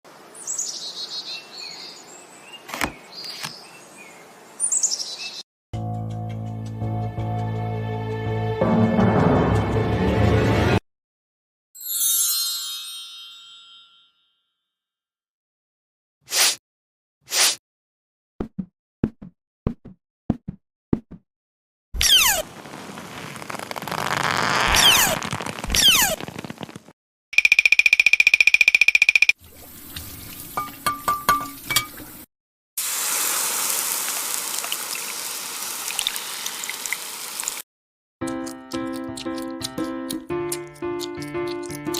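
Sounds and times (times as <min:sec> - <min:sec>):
music with sustained low notes: 0:05.8 - 0:10.7.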